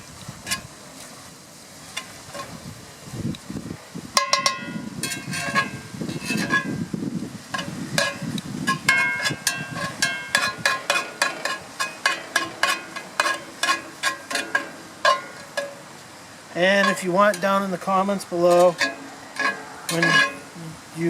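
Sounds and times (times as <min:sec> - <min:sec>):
metal spatula clinking on pan: 0:04.2 - 0:05.7, 0:07.6 - 0:15.8, 0:18.7 - 0:20.5
sausage sizzling: 0:06.8 - 0:21.0.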